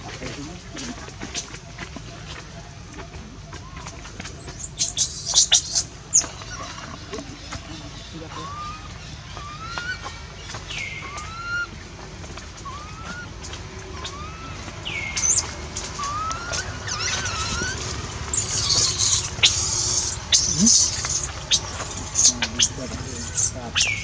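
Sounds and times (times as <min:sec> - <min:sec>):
monkey chirps: 0:02.9 - 0:11.8, 0:12.6 - 0:13.4, 0:14.0 - 0:24.0
monkey screeching: 0:03.5 - 0:07.1, 0:08.3 - 0:10.1, 0:10.8 - 0:11.8, 0:12.6 - 0:24.0.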